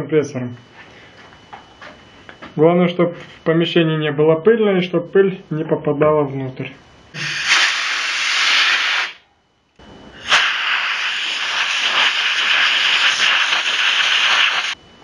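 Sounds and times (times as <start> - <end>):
compressed air blow gun hiss: 7.2 - 9.2, 10.2 - 14.8.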